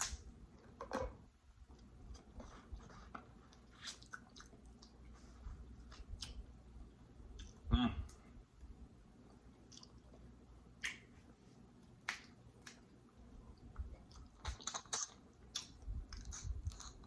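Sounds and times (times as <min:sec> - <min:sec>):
chewing: 0:03.4 - 0:05.3, 0:09.6 - 0:10.2, 0:13.9 - 0:17.0.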